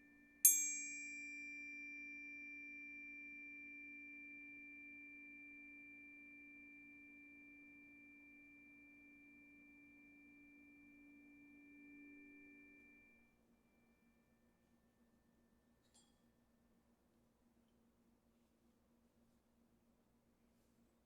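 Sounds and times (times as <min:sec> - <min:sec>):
ringing of struck sound bath instrument: 0:00.0 - 0:13.3.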